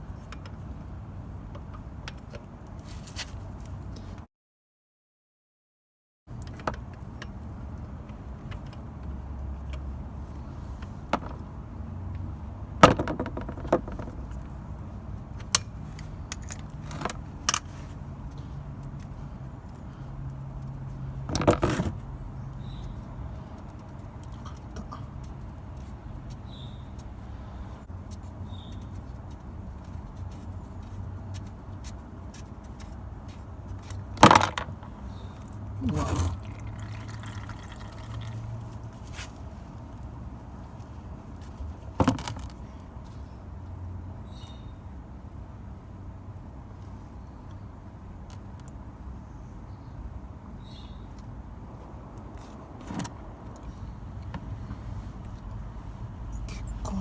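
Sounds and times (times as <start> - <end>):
socket wrench clinking on metal: 15.4 - 17.8.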